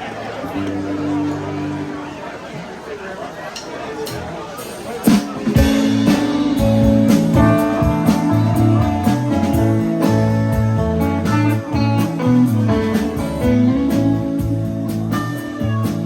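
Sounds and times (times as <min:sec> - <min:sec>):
guitar lines: 0:00.0 - 0:02.8, 0:03.6 - 0:16.0
drum hits: 0:05.1 - 0:12.0
bass line: 0:05.6 - 0:16.0.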